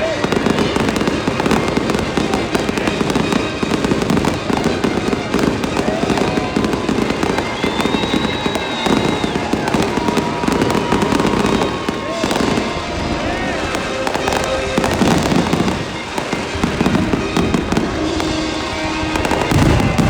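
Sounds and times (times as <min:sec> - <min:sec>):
fireworks bangs and crackles: 0:00.0 - 0:20.0.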